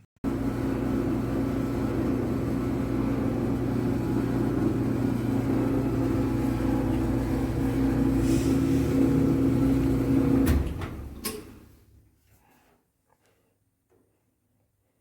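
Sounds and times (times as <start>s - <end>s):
machine motor humming: 0.3s - 11.2s.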